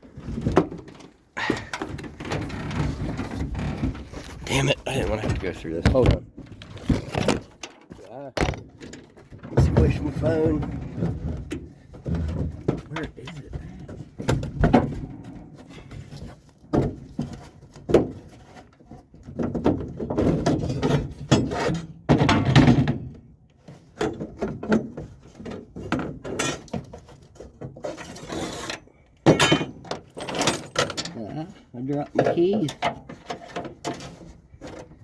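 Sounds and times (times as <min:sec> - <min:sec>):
knocks thunks and clatter: 0:00.1 - 0:18.3, 0:19.2 - 0:23.3, 0:29.2 - 0:31.2.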